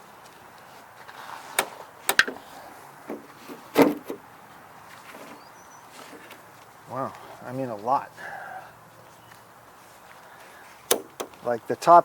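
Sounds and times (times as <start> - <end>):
wooden frame parts knocking: 1.6 - 4.3, 10.9 - 11.5.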